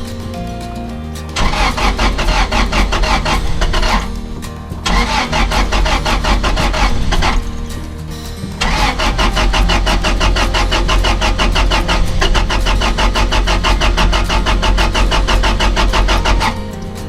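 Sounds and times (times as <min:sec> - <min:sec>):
starter motor cranking engine: 0:01.4 - 0:07.8, 0:08.6 - 0:16.7.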